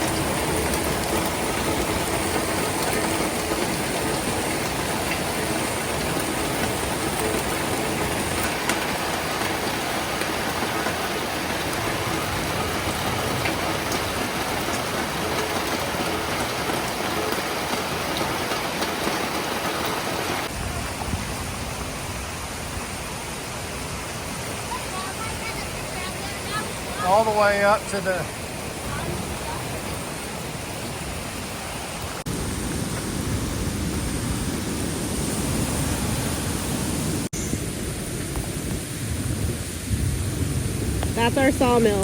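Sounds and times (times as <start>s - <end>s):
floodwater rushing: 0.0s - 42.0s.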